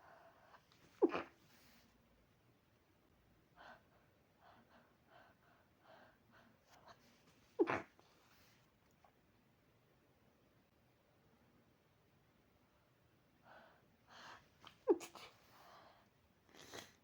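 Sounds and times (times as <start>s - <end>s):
person sneezing: 14.6s - 15.4s.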